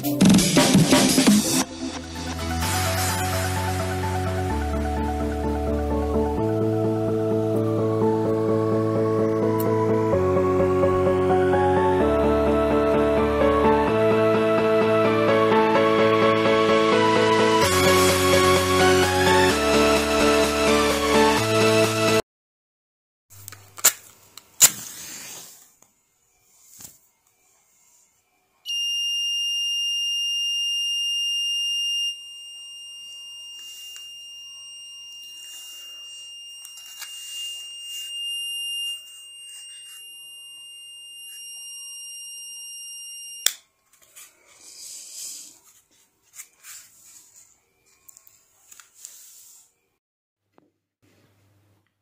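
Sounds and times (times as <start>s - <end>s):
high-pitched alarm buzzer tone: 28.7s - 43.5s.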